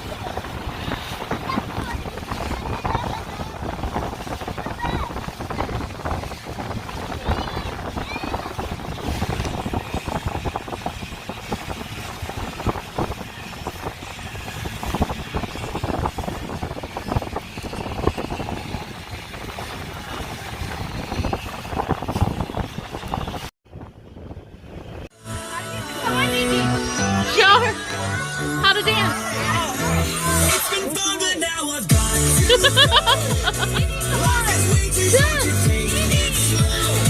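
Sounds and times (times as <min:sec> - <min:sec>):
motorboat engine: 0:00.0 - 0:23.5
water rushing: 0:00.0 - 0:23.5, 0:25.6 - 0:37.0
wind buffeting microphone: 0:00.0 - 0:25.1.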